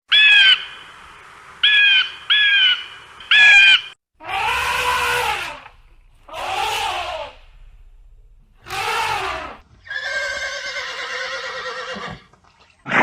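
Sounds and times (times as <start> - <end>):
high-pitched animal calls: 1.6 - 7.9, 8.6 - 12.2
rough animal calls: 1.6 - 12.2.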